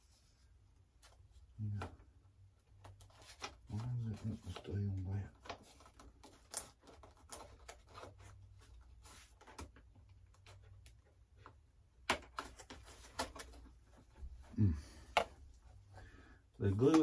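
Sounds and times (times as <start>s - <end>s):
hands handling plastic parts: 2.7s - 14.3s.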